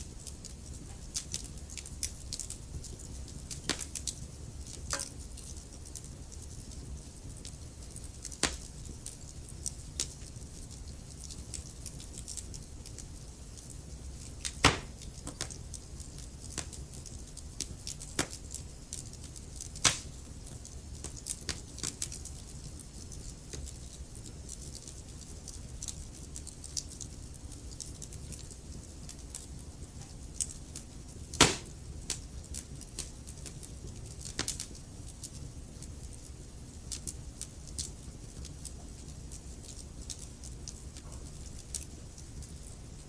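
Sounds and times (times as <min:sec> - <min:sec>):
fire crackles and pops: 0:00.0 - 0:43.0
fire rumble and hiss: 0:00.0 - 0:43.0.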